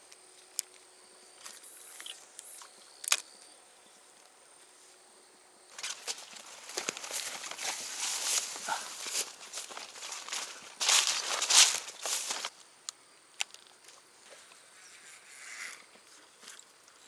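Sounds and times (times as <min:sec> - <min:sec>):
footsteps crunching through ground: 0:05.7 - 0:12.7.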